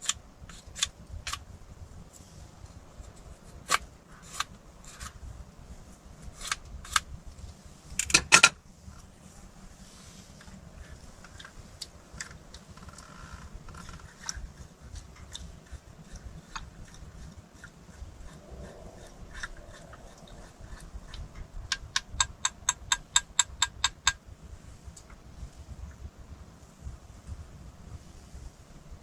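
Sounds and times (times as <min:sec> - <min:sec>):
low steady rumble: 0:00.0 - 0:29.0
small clicks and knocks: 0:07.9 - 0:08.6, 0:19.4 - 0:24.2.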